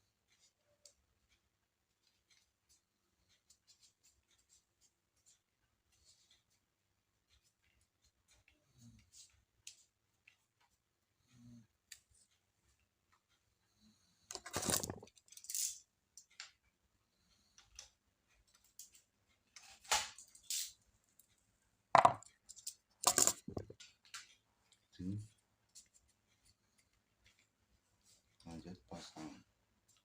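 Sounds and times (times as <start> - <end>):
light clicks and taps: 0.2 - 10.9, 16.1 - 21.4.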